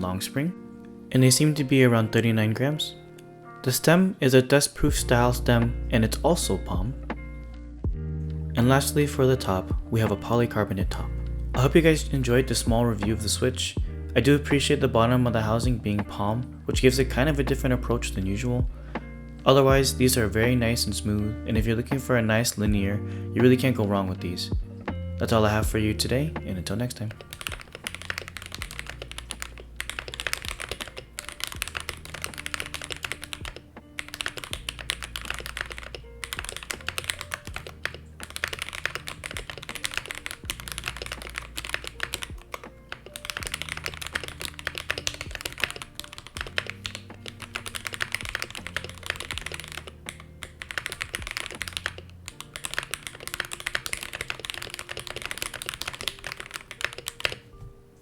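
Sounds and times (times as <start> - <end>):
soft background music: 0.0 - 58.0
mechanical keyboard typing: 26.7 - 57.5.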